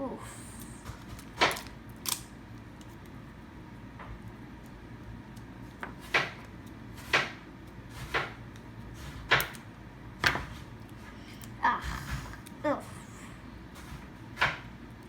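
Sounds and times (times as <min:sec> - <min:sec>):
plastic packaging clacking: 0:01.1 - 0:03.2.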